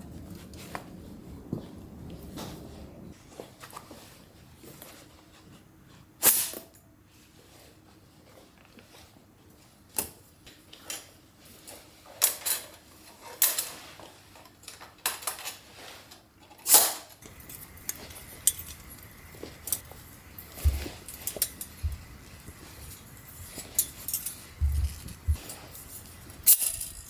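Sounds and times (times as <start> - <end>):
metal camping gear clinking: 10.5 - 27.0
dull thumps: 24.6 - 25.4.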